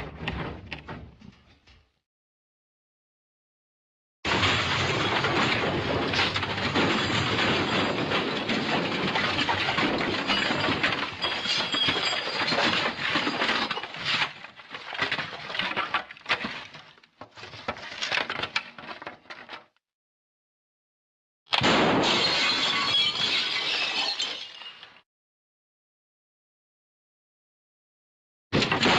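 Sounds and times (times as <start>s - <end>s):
falling debris impacts: 4.3s - 14.2s, 28.6s - 28.9s
crash of breaking and splintering: 4.3s - 16.9s, 28.6s - 28.9s.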